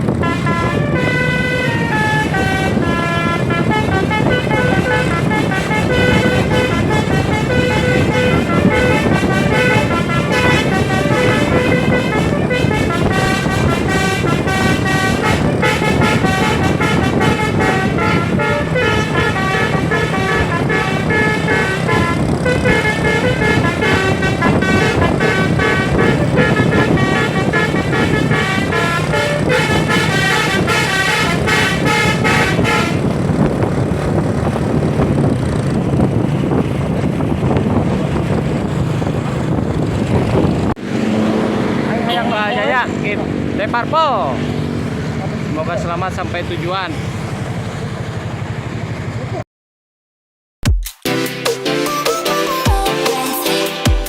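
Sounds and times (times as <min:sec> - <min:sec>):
multi-tone bus air horn melody: 0:00.0 - 0:33.4, 0:41.9 - 0:43.0
bus engine running: 0:00.0 - 0:49.4.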